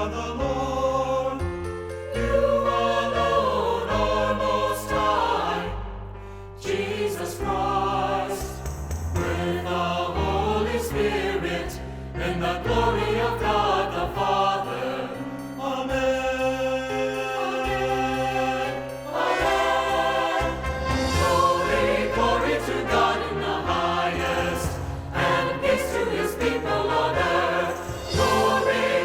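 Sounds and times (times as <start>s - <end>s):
choir singing: 0.0s - 29.0s
instrumental accompaniment: 16.9s - 29.0s.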